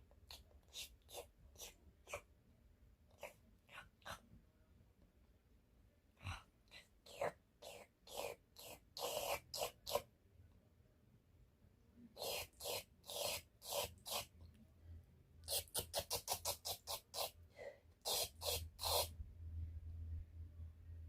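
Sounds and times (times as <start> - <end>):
wet mouth smacking and slurping: 12.2 - 14.3, 15.5 - 17.4.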